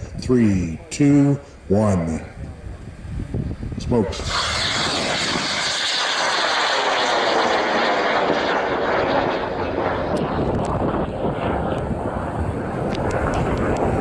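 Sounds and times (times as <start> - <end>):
rocket motor rushing: 4.1 - 14.0.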